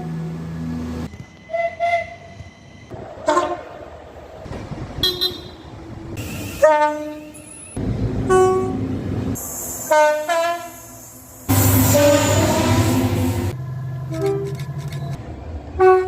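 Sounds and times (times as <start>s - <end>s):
train horn toots: 9.9s - 10.8s, 11.5s - 13.5s, 15.8s - 16.0s.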